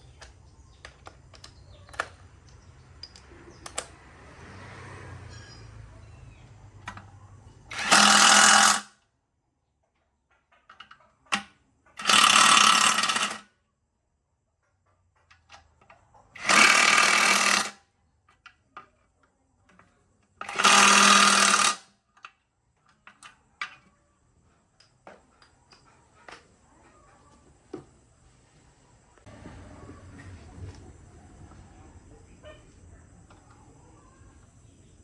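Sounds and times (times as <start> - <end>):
power tool bursts: 7.7 - 8.9, 12.0 - 13.4, 16.4 - 17.8, 20.4 - 21.9.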